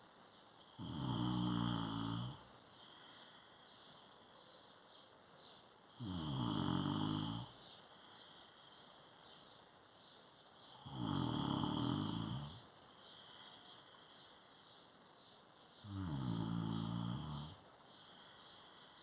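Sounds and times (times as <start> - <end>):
quiet breathing: 0.0 - 19.0
person snoring: 0.8 - 3.6, 6.0 - 7.6, 10.7 - 14.2, 15.8 - 19.0.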